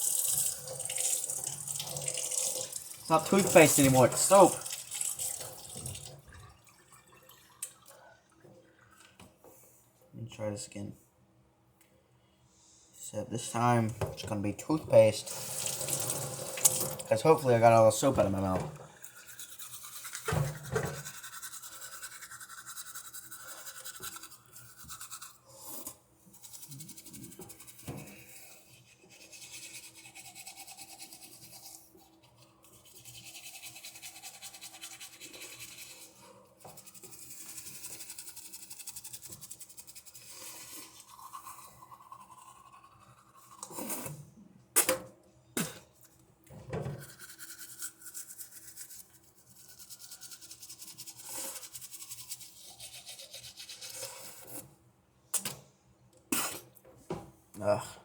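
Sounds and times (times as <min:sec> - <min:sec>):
toothbrush scrubbing teeth: 0:00.0 - 0:05.4, 0:15.2 - 0:44.3, 0:47.0 - 0:54.7.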